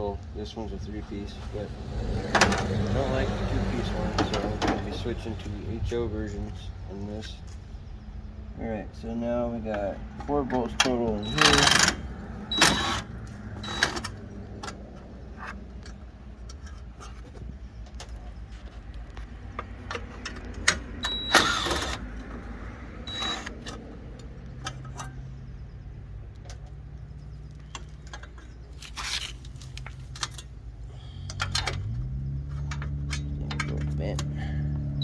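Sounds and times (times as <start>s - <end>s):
low engine hum: 0.0s - 35.0s
hand tools and screws clicking: 10.6s - 22.4s, 31.2s - 35.0s
scrapes and clatters: 27.7s - 30.6s.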